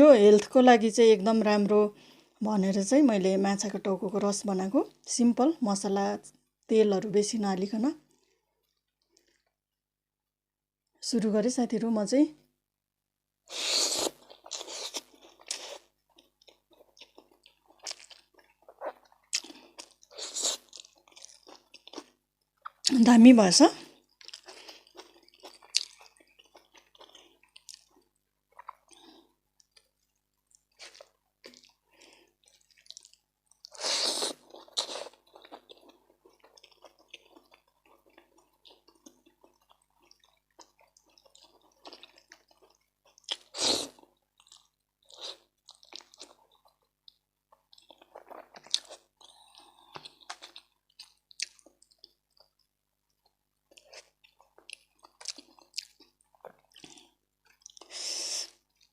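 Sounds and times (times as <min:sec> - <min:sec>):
person chewing food: 0:08.1 - 0:09.6, 0:13.5 - 0:22.9, 0:23.8 - 0:58.9.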